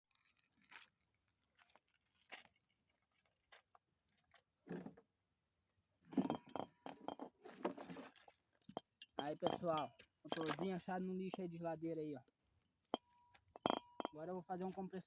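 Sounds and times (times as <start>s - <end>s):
objects being handled: 6.1s - 10.9s, 12.9s - 14.2s.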